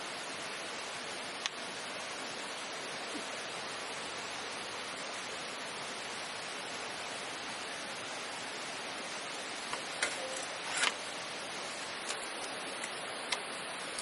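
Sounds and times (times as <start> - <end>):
steady rushing noise: 0.0 - 14.0
sharp clicks and crackles: 1.4 - 1.6, 11.8 - 14.0.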